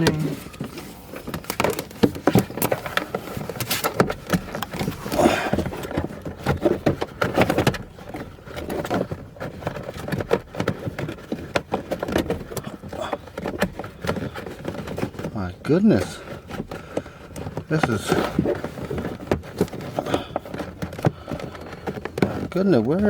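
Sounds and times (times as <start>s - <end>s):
hands working wiring through plastic trim: 0.0s - 23.0s.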